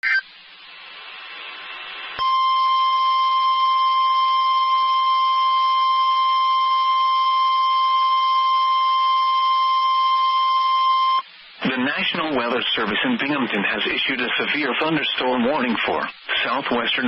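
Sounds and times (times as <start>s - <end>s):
radio hiss: 0.0s - 2.2s, 11.2s - 17.0s.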